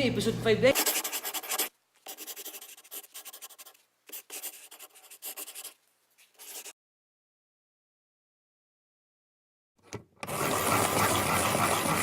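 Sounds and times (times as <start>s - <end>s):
scratchy rubbing: 0.7s - 6.8s.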